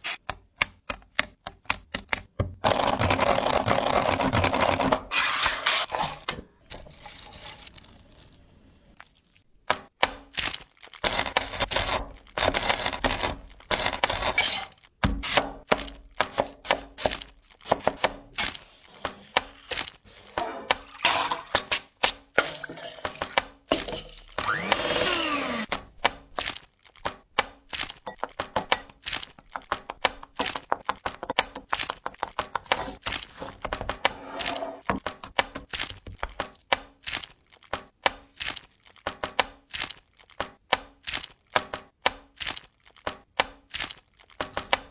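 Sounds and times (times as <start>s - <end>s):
kitchen knocks and clatters: 12.0s - 24.8s.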